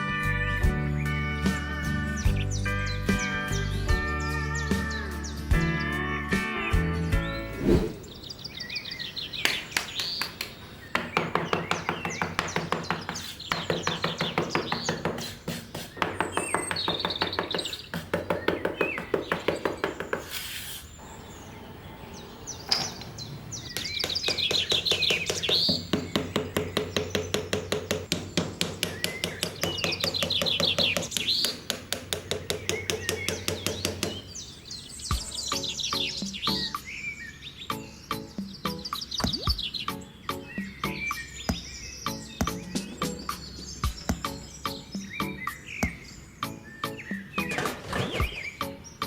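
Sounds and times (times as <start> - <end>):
birds chirping: 0.6 - 49.0
regular knocking: 9.5 - 20.3.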